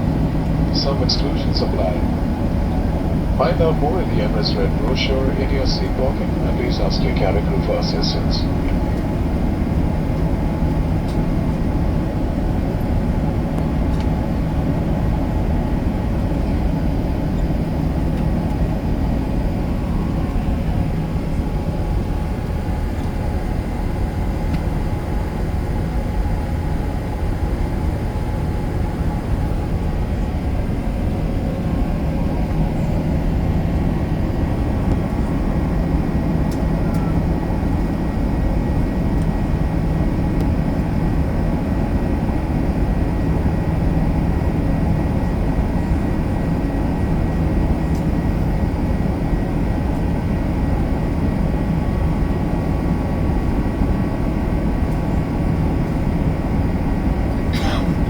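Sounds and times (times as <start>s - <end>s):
aircraft cabin engine drone: 0.0s - 58.0s
faint steady hum: 0.0s - 58.0s.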